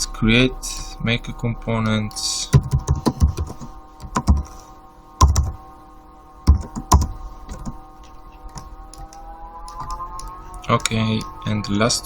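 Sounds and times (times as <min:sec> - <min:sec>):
faint steady hum: 0:00.0 - 0:12.0
computer keyboard keystrokes: 0:02.6 - 0:04.5, 0:05.2 - 0:05.6, 0:06.5 - 0:07.8.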